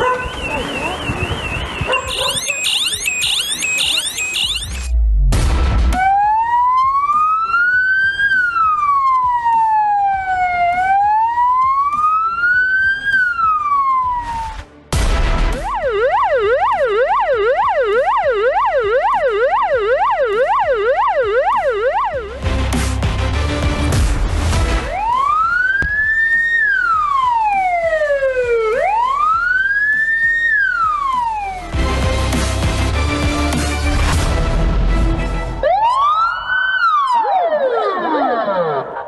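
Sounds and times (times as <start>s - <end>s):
siren fast yelp: 0.0s - 4.9s, 15.6s - 22.3s, 35.6s - 38.8s
siren wailing: 0.0s - 5.0s, 5.9s - 14.6s, 15.5s - 22.4s, 24.8s - 31.8s, 35.6s - 39.0s.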